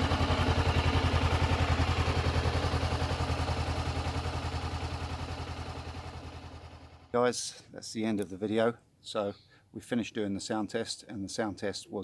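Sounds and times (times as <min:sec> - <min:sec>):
motorcycle engine idling: 0:00.0 - 0:07.2.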